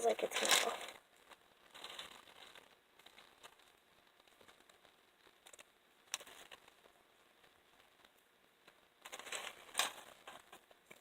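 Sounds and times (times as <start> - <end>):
plastic bag crinkling and clicking: 0.0 - 6.9.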